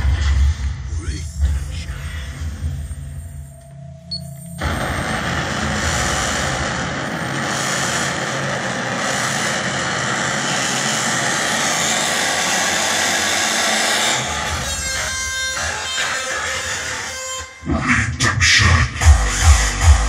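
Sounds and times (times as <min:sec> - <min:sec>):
loud steady rushing noise: 0:04.6 - 0:17.0.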